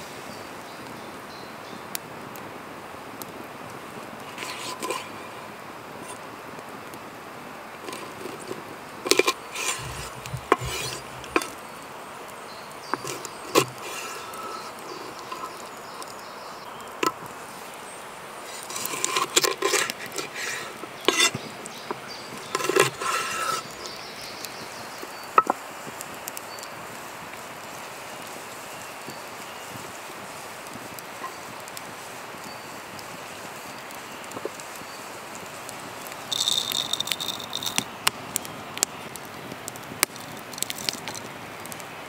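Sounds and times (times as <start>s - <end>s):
outdoor background hiss: 0.0s - 42.0s
objects being handled: 4.2s - 5.2s, 7.8s - 11.7s, 12.9s - 16.2s, 17.0s - 17.3s, 18.5s - 23.9s, 36.2s - 37.9s.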